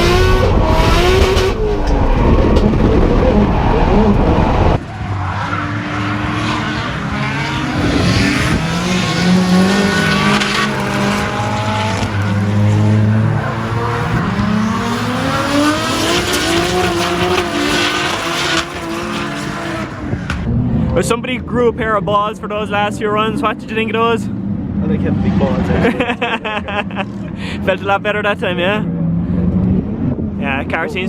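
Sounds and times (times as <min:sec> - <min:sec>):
car engine revving hard: 0:00.0 - 0:20.6
tyres squealing: 0:04.8 - 0:20.0.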